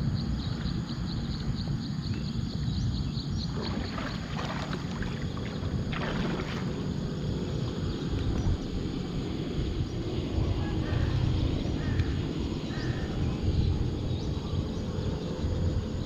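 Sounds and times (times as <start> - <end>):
wind rumble on microphone: 0.0 - 16.0
water swishes: 3.4 - 7.3.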